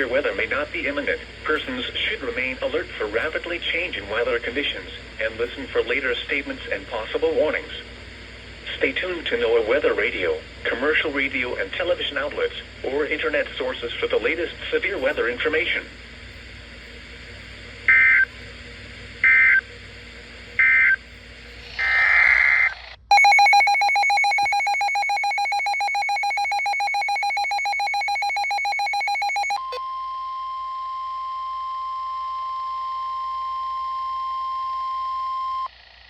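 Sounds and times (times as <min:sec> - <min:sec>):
digital data bursts: 0:21.8 - 0:29.6
two-tone attention signal: 0:23.1 - 0:30.0
steady single-tone alarm: 0:23.1 - 0:35.7.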